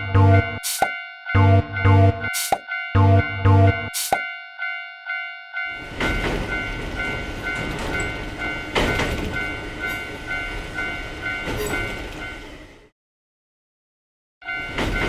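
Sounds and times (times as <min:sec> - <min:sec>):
level crossing warning bell: 0:00.0 - 0:12.7, 0:14.4 - 0:15.0
passing train rumble and clatter: 0:05.7 - 0:12.9, 0:14.5 - 0:15.0.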